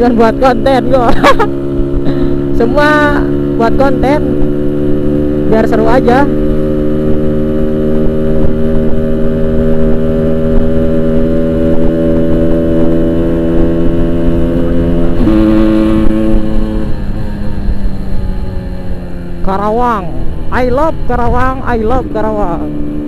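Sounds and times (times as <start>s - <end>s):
two-stroke motorcycle engine riding: 0.0s - 23.0s.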